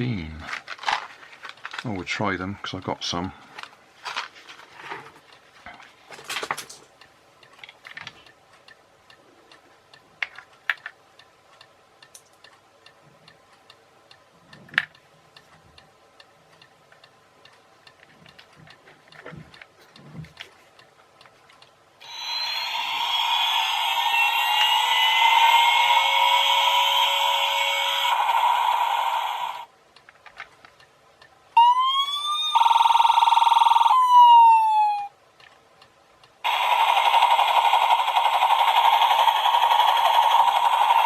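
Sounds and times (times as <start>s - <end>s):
toy electronic sound effect: 22.0s - 29.7s, 31.6s - 35.1s, 36.4s - 41.0s.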